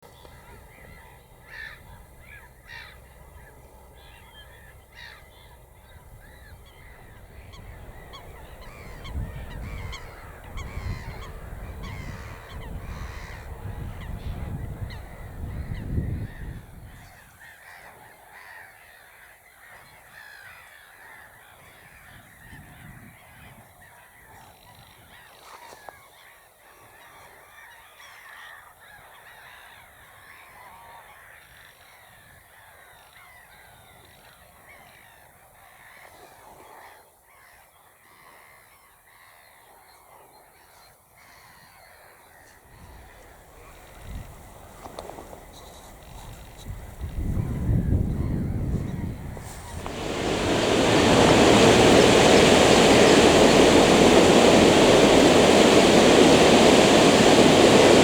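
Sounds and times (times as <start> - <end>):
low rumble: 49.1 - 58.0
many birds chirping: 49.5 - 58.0.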